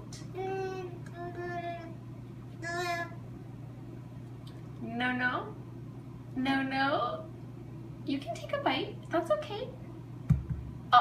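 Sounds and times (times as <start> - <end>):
toddler high-pitched vocal sound: 2.6 - 3.2.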